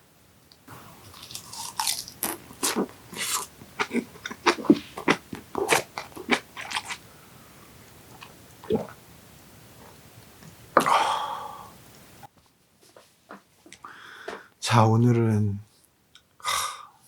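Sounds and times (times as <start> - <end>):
person chewing and biting food: 0.8 - 7.0.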